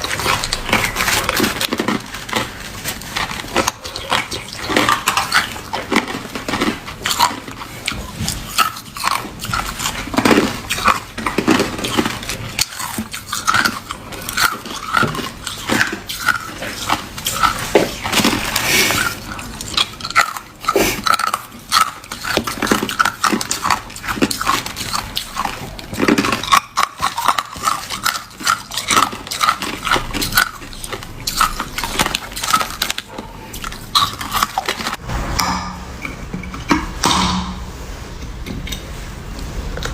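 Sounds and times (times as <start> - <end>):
ice being chewed and crunched: 0.0 - 35.0.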